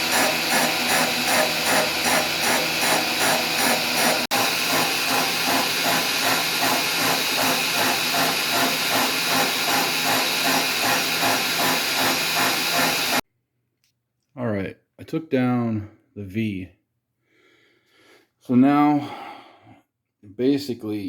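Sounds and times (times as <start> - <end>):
motor hum: 0.0 - 13.2.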